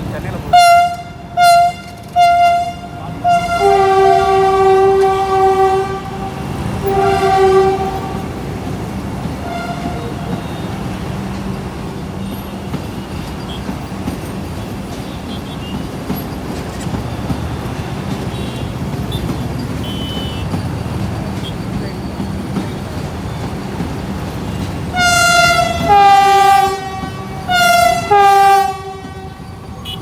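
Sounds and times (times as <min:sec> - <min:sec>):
train rumbling: 0:00.0 - 0:30.0
train horn blasts: 0:00.5 - 0:13.8, 0:17.7 - 0:20.6, 0:24.5 - 0:30.0.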